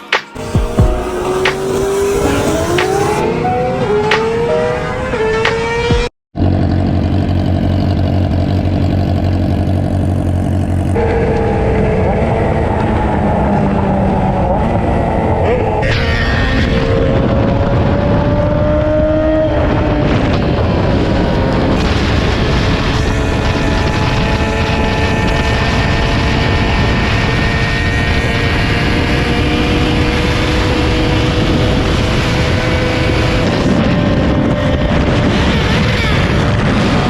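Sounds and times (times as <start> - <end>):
motorcycle engine running: 0.4 - 3.2, 5.9 - 15.6, 19.2 - 37.0
wind rush: 11.0 - 37.0.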